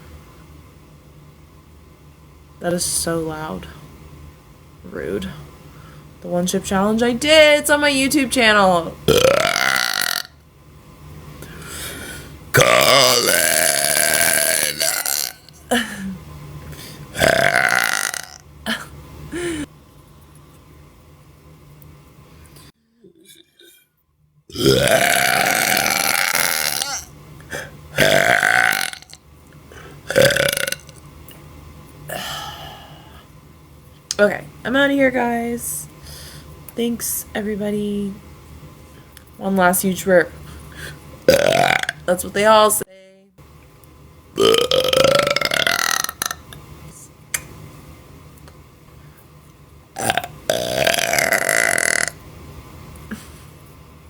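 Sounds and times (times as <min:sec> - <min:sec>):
person belching: 0:09.1 - 0:10.4, 0:12.6 - 0:15.8, 0:17.2 - 0:18.9, 0:24.5 - 0:27.1, 0:28.0 - 0:29.2, 0:30.1 - 0:30.9, 0:41.3 - 0:42.0, 0:44.4 - 0:46.4, 0:50.0 - 0:52.2
person burping: 0:09.1 - 0:10.4, 0:12.6 - 0:16.2, 0:17.2 - 0:19.7, 0:24.5 - 0:29.2, 0:30.1 - 0:30.9, 0:41.3 - 0:42.0, 0:44.4 - 0:46.4, 0:50.0 - 0:52.2.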